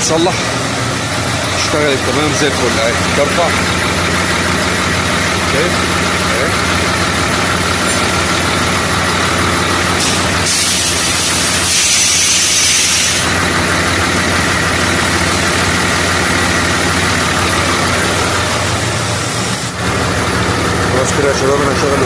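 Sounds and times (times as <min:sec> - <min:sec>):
truck engine idling: 0:00.0 - 0:22.0
air hissing from suspension: 0:09.8 - 0:13.4, 0:18.6 - 0:19.8.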